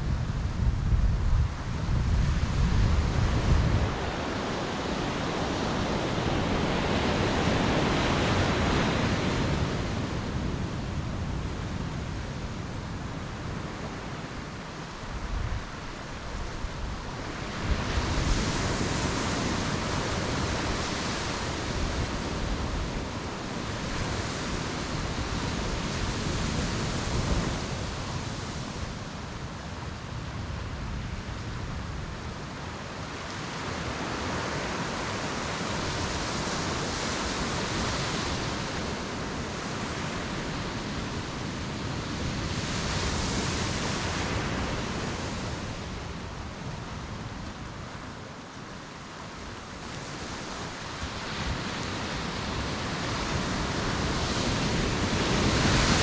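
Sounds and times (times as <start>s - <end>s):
waves breaking on a beach: 0.0s - 56.0s.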